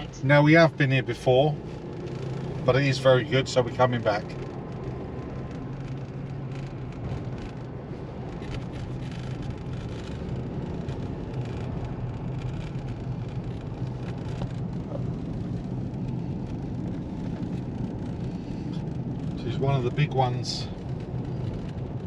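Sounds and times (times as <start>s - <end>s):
car engine hum: 0.0s - 22.0s
road and tyre noise: 0.0s - 22.0s.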